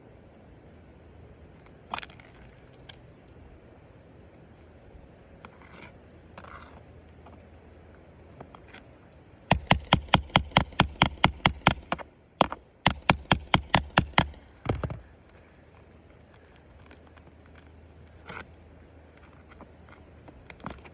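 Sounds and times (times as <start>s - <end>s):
hammer striking metal: 9.5s - 14.5s.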